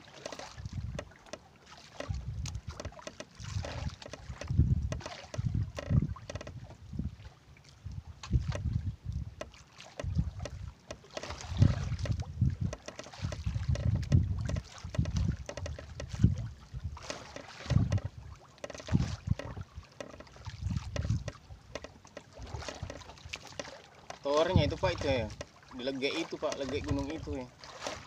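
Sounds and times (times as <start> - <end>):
wind buffeting microphone: 0.6 - 1.1, 2.1 - 2.8, 3.4 - 9.4, 10.0 - 10.7, 11.4 - 21.6, 24.4 - 25.4.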